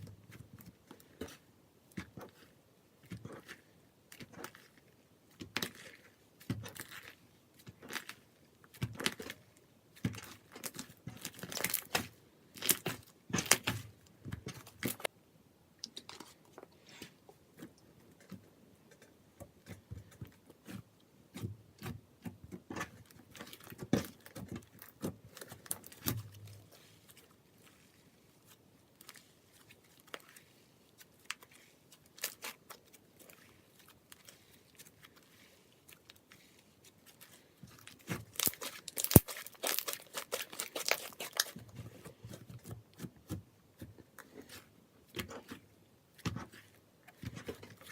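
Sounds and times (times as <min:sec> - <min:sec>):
slime squished by hand: 0:22.9 - 0:45.6.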